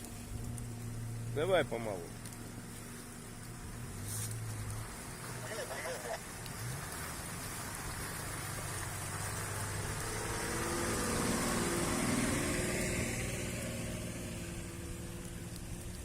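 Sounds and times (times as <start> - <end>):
off-road vehicle engine running: 0.0 - 16.0.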